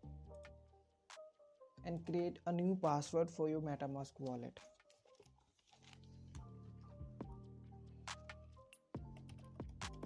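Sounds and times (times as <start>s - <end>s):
background music with low drone: 0.0s - 10.0s.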